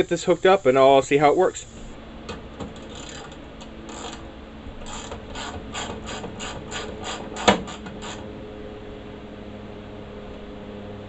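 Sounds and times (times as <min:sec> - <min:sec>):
ratchet wrench clicking: 0:03.9 - 0:04.2, 0:04.8 - 0:08.2.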